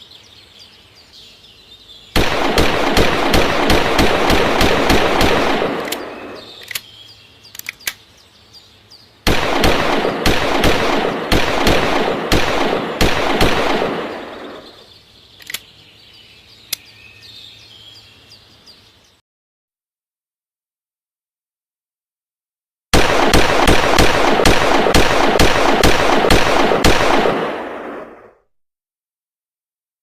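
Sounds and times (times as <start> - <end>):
rapid handgun gunfire: 2.2 - 6.6, 9.3 - 14.8, 23.0 - 28.1
single sharp gunshot cracks: 9.3 - 14.6.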